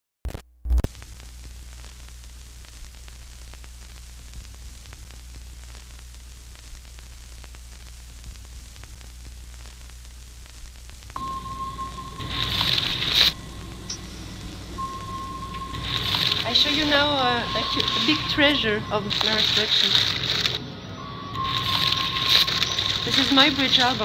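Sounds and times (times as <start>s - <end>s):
faint crackles: 0.3s - 24.0s
static hiss: 0.8s - 24.0s
low hum: 11.2s - 24.0s.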